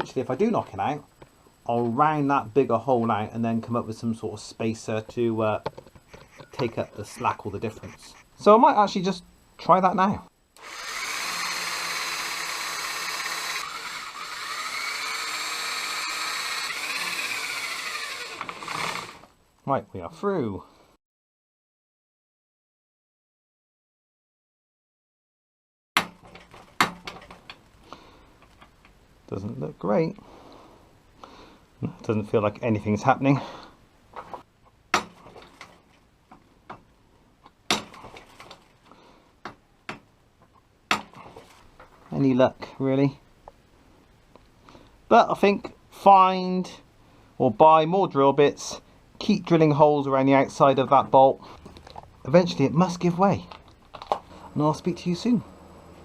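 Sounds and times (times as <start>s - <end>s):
electric drill boring into metal: 10.6s - 19.3s.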